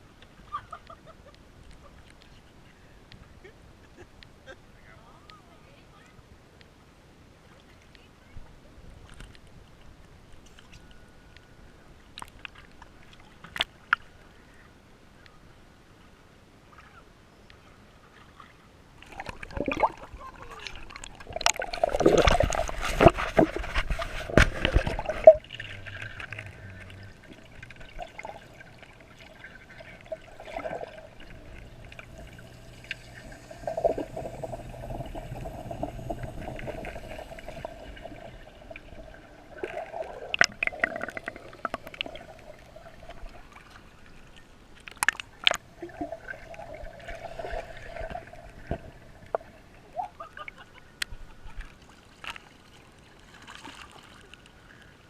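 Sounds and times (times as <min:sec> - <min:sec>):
water splashing and sloshing: 0:17.9 - 0:55.0.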